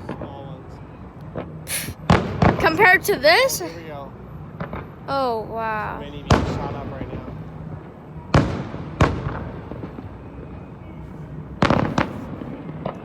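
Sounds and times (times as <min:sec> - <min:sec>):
fireworks bursting: 0:01.4 - 0:03.6, 0:11.6 - 0:13.0.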